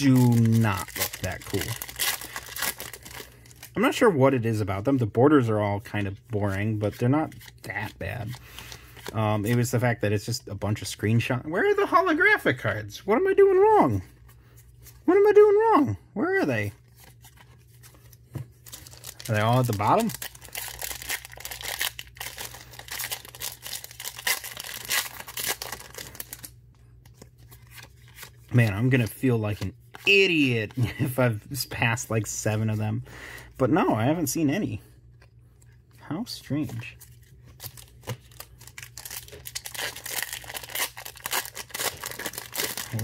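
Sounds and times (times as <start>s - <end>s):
wrapper crinkling and tearing: 0.0s - 4.0s, 18.6s - 26.6s, 36.8s - 43.0s.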